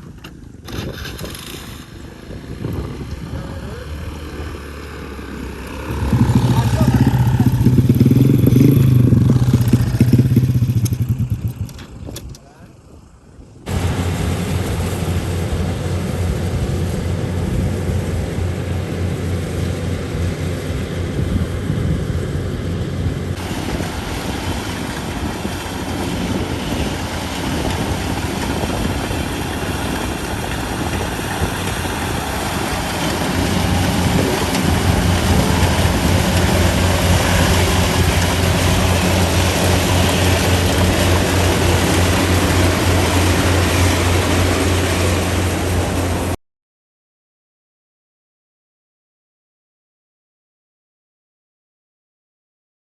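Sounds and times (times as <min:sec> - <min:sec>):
diesel engine droning: 0:00.0 - 0:46.4.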